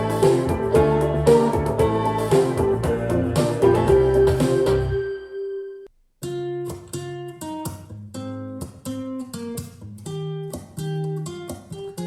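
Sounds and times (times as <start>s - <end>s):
picked acoustic guitar: 0.0s - 5.0s, 6.2s - 12.0s
bass line: 0.0s - 5.2s.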